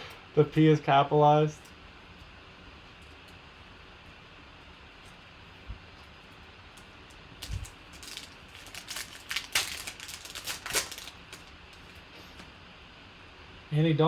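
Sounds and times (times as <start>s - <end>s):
card wrappers crinkling: 5.9s - 12.0s.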